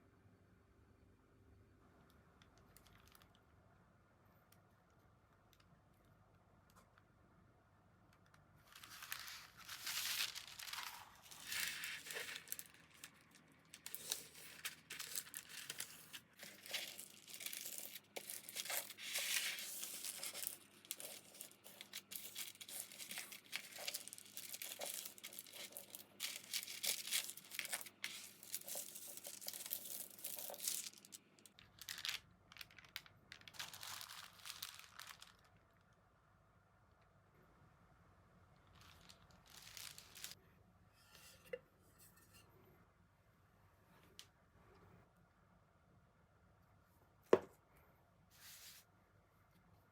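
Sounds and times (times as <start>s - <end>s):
packaging crinkling and rustling: 8.6s - 35.6s, 38.8s - 40.4s
packaging tearing: 8.8s - 31.2s.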